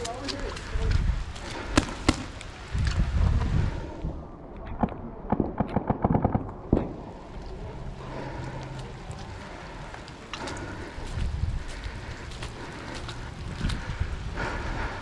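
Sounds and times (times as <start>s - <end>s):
paintball marker firing: 1.7s - 2.5s, 4.7s - 7.2s.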